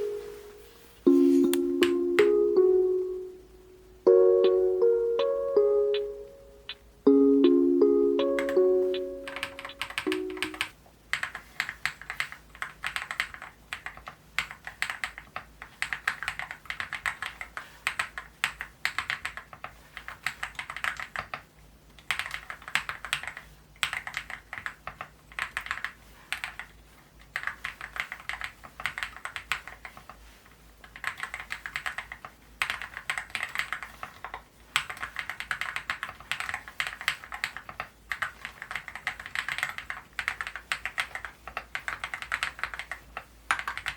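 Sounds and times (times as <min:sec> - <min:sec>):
fast typing on mechanical keyboard: 0:09.3 - 0:30.2, 0:30.8 - 0:43.9.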